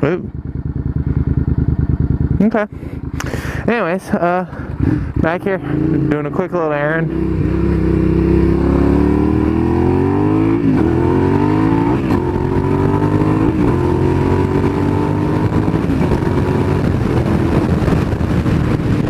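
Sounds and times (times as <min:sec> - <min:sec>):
motorcycle engine accelerating: 0:00.0 - 0:19.0
wind noise on microphone: 0:07.1 - 0:19.0.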